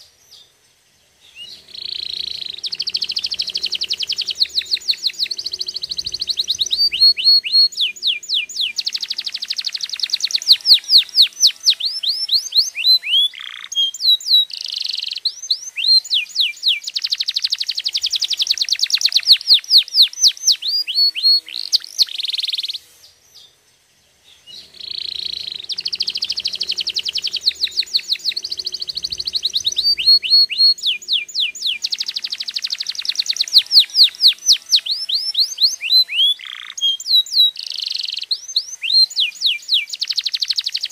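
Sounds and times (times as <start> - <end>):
canary singing: 1.1 - 23.5, 24.1 - 40.9.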